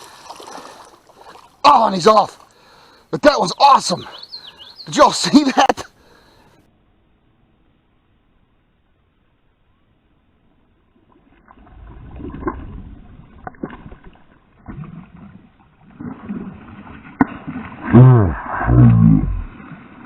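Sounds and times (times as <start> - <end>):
water sloshing around a kayak: 0.0 - 2.9, 10.9 - 17.9.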